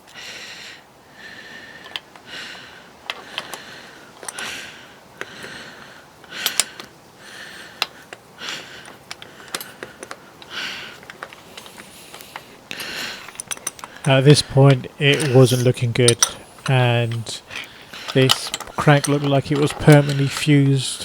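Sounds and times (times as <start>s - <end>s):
metallic clicks of wrench and puller: 11.0s - 20.8s.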